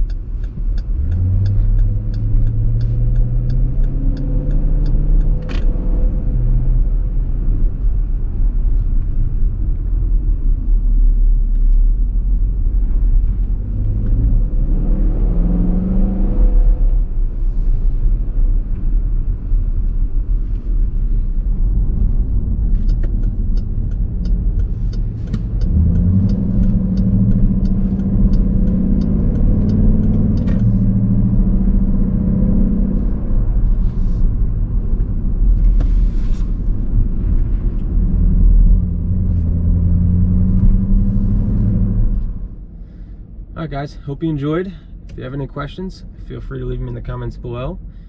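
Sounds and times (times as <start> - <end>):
regular ticking: 0.0 - 5.4, 22.6 - 31.5
car exhaust low drone: 0.0 - 47.1.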